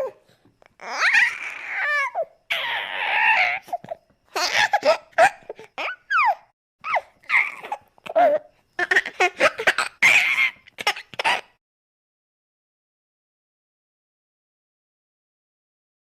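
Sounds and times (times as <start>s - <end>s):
baby giggling and squealing: 0.8s - 11.5s.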